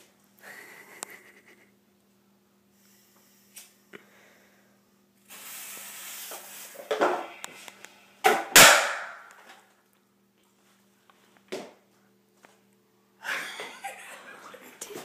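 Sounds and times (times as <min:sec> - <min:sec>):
firecracker fuse hissing: 0:05.2 - 0:06.9
firecracker bangs: 0:08.5 - 0:09.2.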